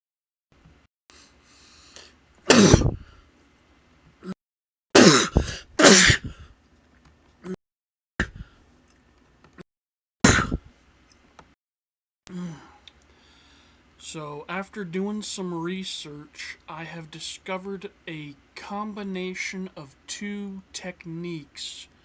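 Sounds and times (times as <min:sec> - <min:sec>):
man sneezing: 0:02.5 - 0:03.0, 0:05.0 - 0:06.4, 0:10.2 - 0:10.6.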